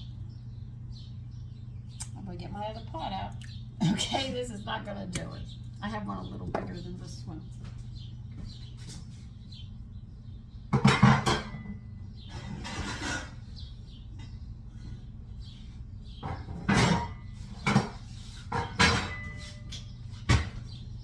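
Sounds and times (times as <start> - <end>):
steady low hum: 0.0 - 21.0
metal pots clanking: 10.8 - 13.4, 16.2 - 20.6.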